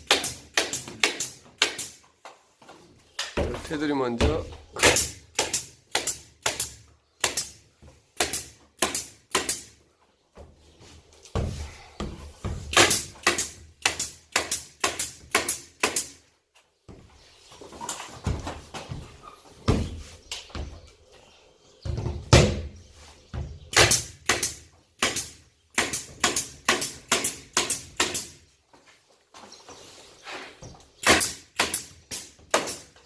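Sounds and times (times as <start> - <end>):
pneumatic staple gun shots: 0.0 - 2.0, 4.8 - 7.6, 8.2 - 9.7, 12.7 - 16.2, 23.7 - 28.4, 31.0 - 33.0.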